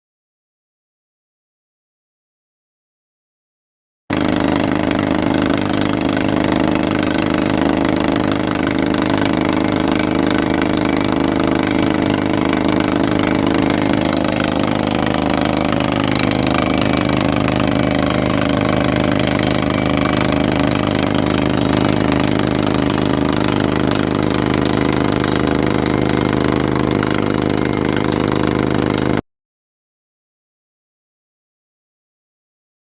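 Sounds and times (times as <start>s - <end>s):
excavator engine running under load: 4.1s - 29.2s
hydraulic drill drilling: 4.1s - 29.2s.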